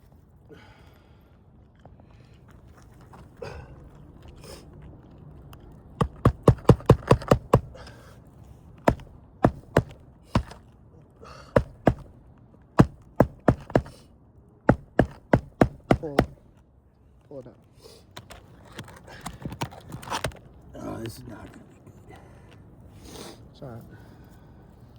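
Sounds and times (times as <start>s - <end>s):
tool tapping under roof shingles: 6.0s - 8.0s, 8.8s - 10.7s, 11.5s - 12.2s, 12.8s - 14.0s, 14.7s - 16.6s.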